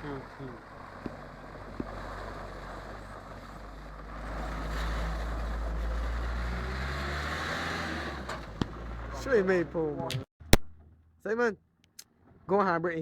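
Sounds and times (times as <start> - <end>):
vehicle engine running: 0.0 - 4.5.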